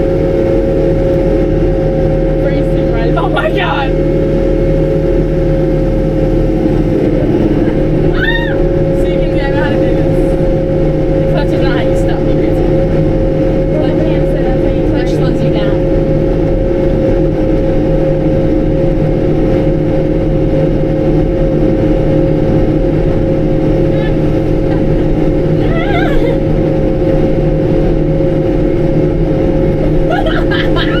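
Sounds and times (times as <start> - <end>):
steady high whine: 0.0 - 31.0
tractor engine droning: 0.0 - 31.0.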